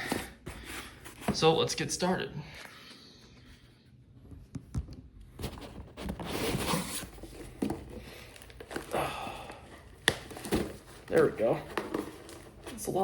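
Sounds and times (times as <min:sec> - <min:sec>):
packaging rustling and ripping: 0:05.4 - 0:13.0.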